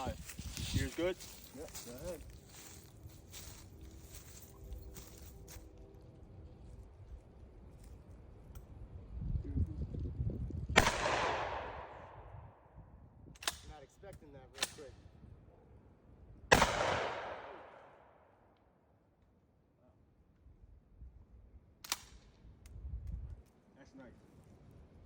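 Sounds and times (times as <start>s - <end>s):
echoing shotgun blasts: 10.8s - 12.3s, 16.5s - 18.3s.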